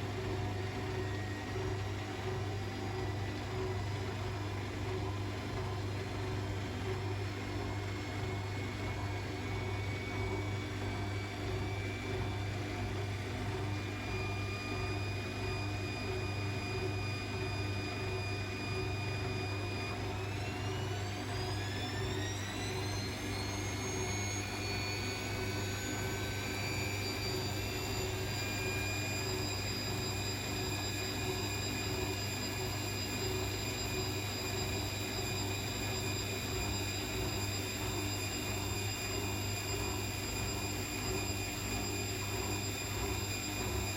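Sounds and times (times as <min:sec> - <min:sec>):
washing machine spinning: 0:00.0 - 0:43.9.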